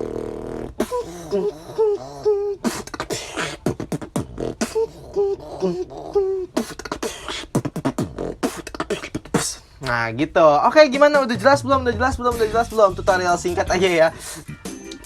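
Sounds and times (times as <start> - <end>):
pitched humming: 0.0 - 9.8
beatboxing with lip-bass drops: 0.0 - 10.0, 10.8 - 14.7.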